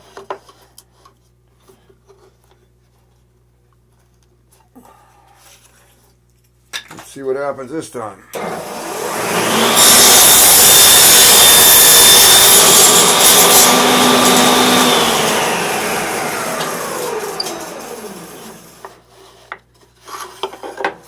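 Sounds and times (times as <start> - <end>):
saw blade winding down: 8.4 - 19.0
table saw cutting wood: 8.4 - 19.0.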